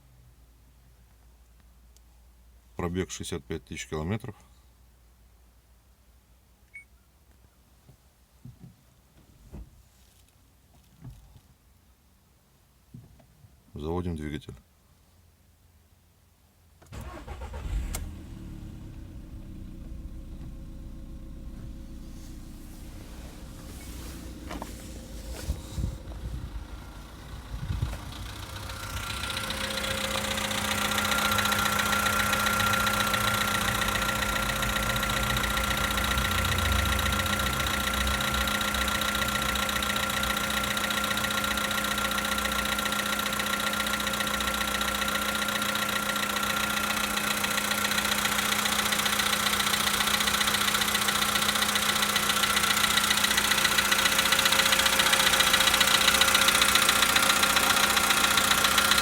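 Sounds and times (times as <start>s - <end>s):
car engine idling with knock: 18.0s - 59.0s.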